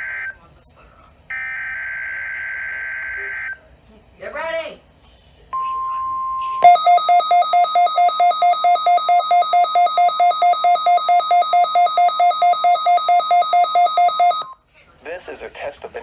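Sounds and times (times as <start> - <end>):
harsh alarm beeping: 0.0 - 0.4, 1.3 - 3.6, 5.6 - 14.6
steady high alarm tone: 0.0 - 0.4, 1.3 - 3.6, 5.6 - 14.6.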